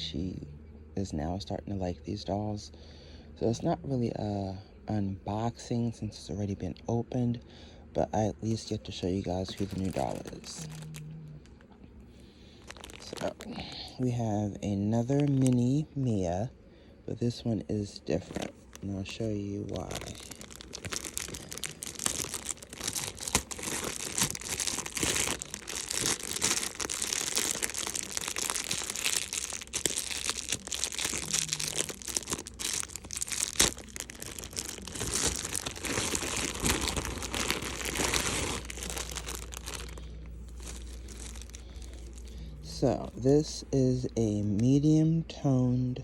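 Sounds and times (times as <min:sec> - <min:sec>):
packaging crinkling and rustling: 0:09.2 - 0:11.7, 0:12.3 - 0:14.0, 0:15.0 - 0:15.7, 0:18.2 - 0:43.2.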